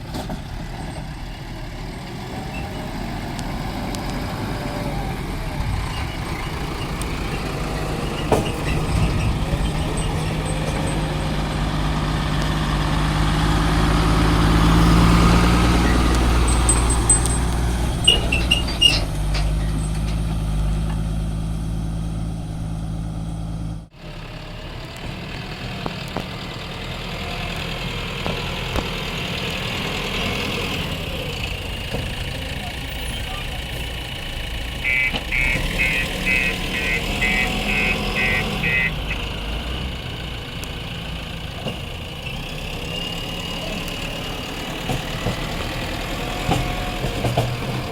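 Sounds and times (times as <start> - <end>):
diesel engine under load: 0.0 - 47.9
high metallic squeaks: 5.9 - 11.7, 14.8 - 20.3.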